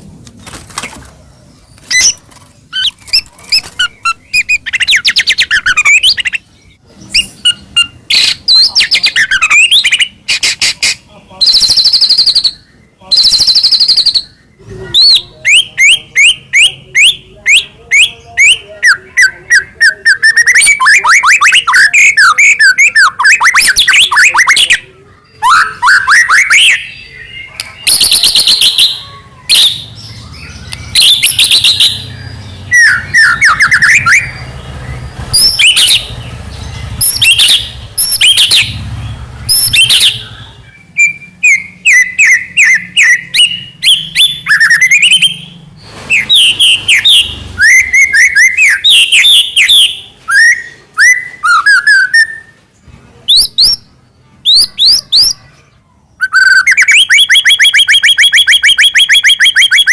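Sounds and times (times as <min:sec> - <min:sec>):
bird singing whistled trills: 0:11.4 - 0:34.5, 0:39.5 - 0:52.6, 0:56.2 - 0:59.9.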